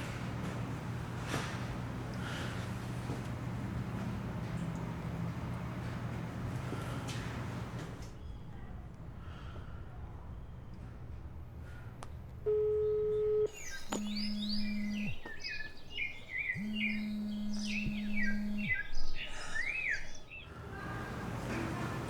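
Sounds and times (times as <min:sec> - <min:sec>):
single steady beep: 0:12.5 - 0:15.8, 0:16.5 - 0:20.1
long low steady tones: 0:12.5 - 0:20.3
birds chirping and singing: 0:13.5 - 0:20.5.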